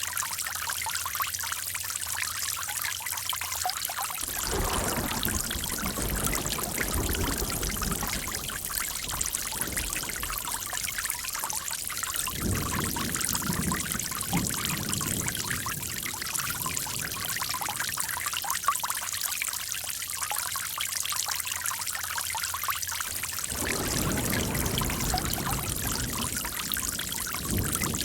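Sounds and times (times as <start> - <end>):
water trickling and splashing: 0.0 - 28.0
deep rush of water: 4.2 - 18.7, 23.0 - 28.0.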